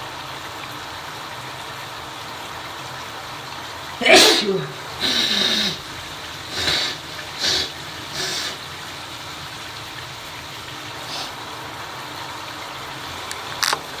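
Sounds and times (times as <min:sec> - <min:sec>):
shower water running: 0:00.0 - 0:14.0
nasal bursts of breath: 0:04.0 - 0:09.0, 0:11.0 - 0:11.5.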